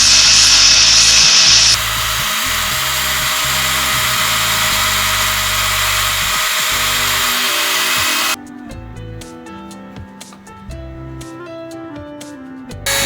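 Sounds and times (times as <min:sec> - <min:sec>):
power tool on wood: 0:00.0 - 0:08.4
background music: 0:08.4 - 0:13.0.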